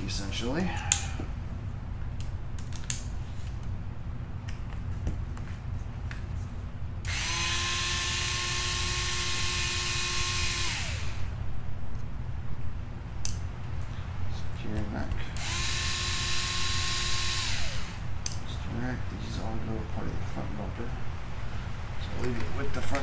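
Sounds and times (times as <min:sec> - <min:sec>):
tools and plastic parts clicking: 0:02.2 - 0:03.6
cordless screwdriver running: 0:07.1 - 0:11.4, 0:15.4 - 0:18.2.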